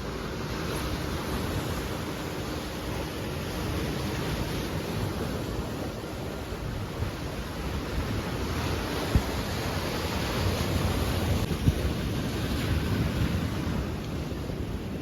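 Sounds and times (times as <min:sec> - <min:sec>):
sea surf breaking on shore: 0:00.0 - 0:15.0
wind buffeting microphone: 0:03.4 - 0:15.0.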